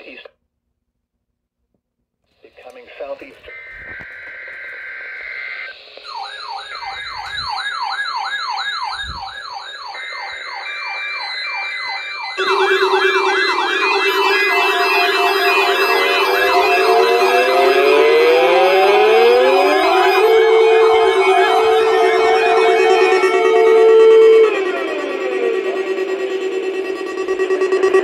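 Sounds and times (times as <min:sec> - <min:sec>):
warbling alarm tone: 0:03.6 - 0:28.0
high beeping tones: 0:06.1 - 0:28.0
steady low tone: 0:12.1 - 0:28.0.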